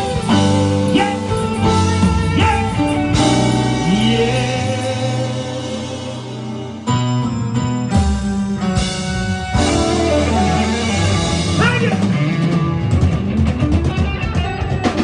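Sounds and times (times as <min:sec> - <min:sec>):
bass: 0:00.0 - 0:15.0
drums: 0:00.0 - 0:15.0
electric guitar: 0:00.0 - 0:15.0.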